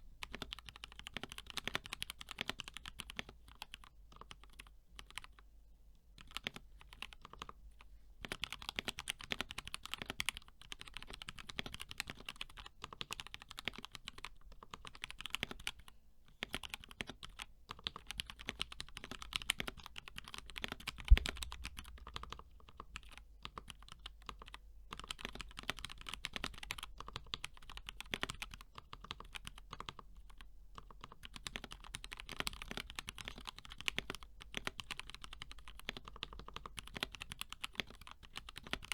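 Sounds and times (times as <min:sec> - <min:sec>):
low thump: 0:21.1 - 0:21.7.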